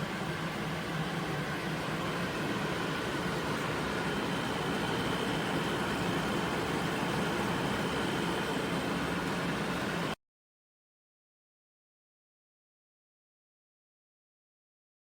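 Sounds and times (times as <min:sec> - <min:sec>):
air conditioner whooshing hum: 0:00.0 - 0:10.2
faint high whine: 0:00.0 - 0:10.2.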